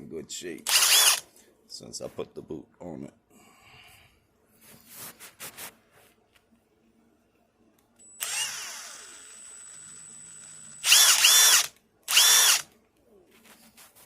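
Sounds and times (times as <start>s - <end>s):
impact wrench bursts: 0.7s - 1.2s, 8.2s - 12.7s
impact wrench motor whine: 0.7s - 1.2s, 8.1s - 12.7s
faint steady high whine: 6.8s - 13.1s.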